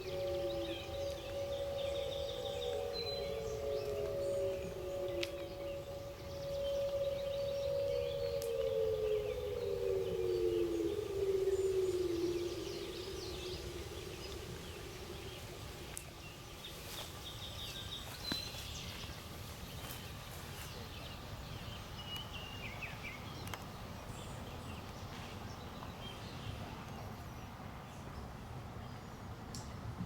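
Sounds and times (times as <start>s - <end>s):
low siren tone: 0.0s - 16.4s
birds chirping: 0.0s - 19.0s.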